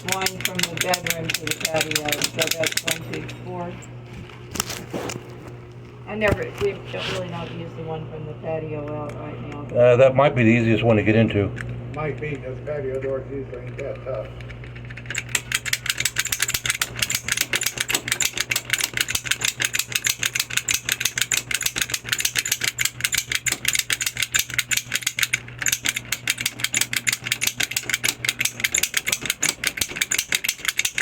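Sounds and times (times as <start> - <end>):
lock pick clicking in lock: 0.0 - 3.4, 15.0 - 31.0
steady low hum: 0.0 - 31.0.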